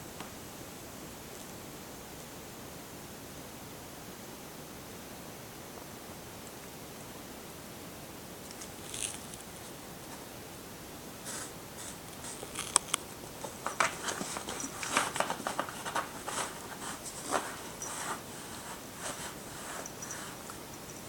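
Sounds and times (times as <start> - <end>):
cat scratching a scratcher: 8.5 - 9.5, 11.2 - 21.0.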